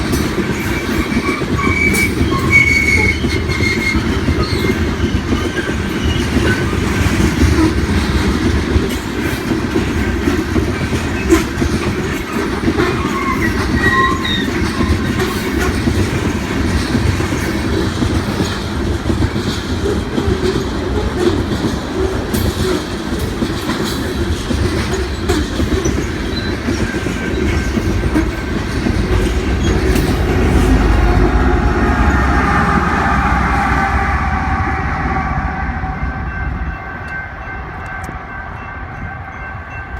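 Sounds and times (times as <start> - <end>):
clickety-clack over rail joints: 0.0 - 33.0
steel wheels rumbling on rail: 0.0 - 39.9
wheel squeals: 0.5 - 7.8, 10.7 - 18.6, 24.4 - 32.7.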